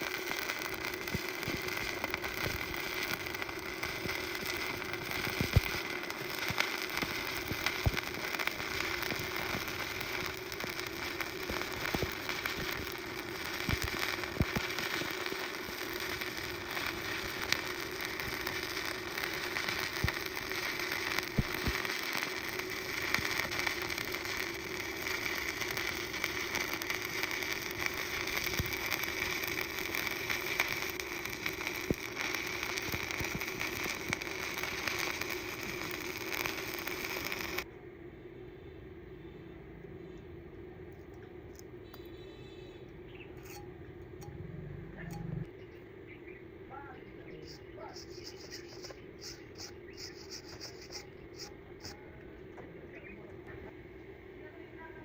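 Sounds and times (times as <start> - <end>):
sharp welding pops: 0.0 - 37.7, 47.9 - 52.0
welding arc crackling: 0.0 - 37.7, 47.4 - 52.1.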